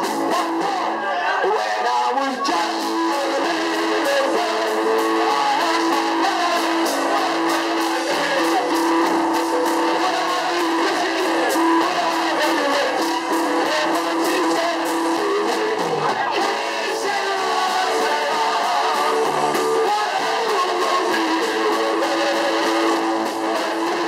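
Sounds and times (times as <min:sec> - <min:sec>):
live band with electric guitar: 0:00.0 - 0:24.0.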